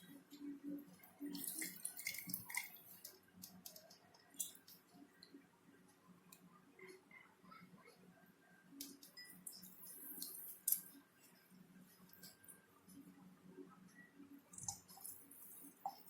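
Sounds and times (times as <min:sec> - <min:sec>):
juice dripping into glass: 0:00.3 - 0:05.3, 0:08.8 - 0:12.6, 0:14.4 - 0:16.0.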